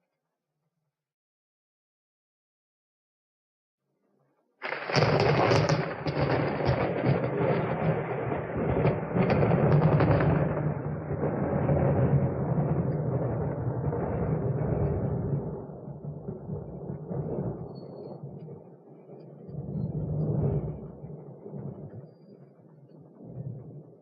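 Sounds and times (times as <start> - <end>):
thunderclap: 4.6 - 22.3, 22.9 - 24.0.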